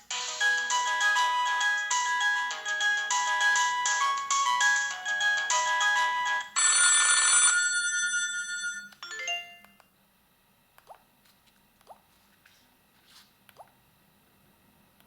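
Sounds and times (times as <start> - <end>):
polyphonic phone ringtone: 0.1 - 9.6.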